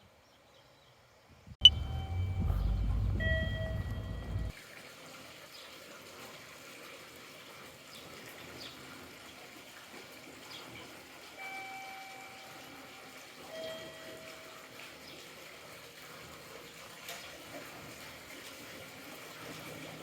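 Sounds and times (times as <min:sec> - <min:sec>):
long steady tones: 0:01.6 - 0:04.5
loud low rumble: 0:01.6 - 0:04.5
stream water flowing: 0:01.6 - 0:20.0.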